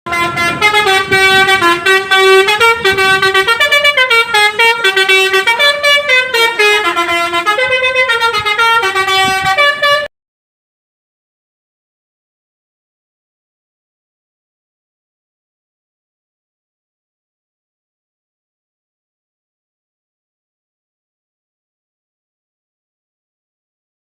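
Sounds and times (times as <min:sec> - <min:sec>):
musical air horn tune: 0:00.1 - 0:10.1.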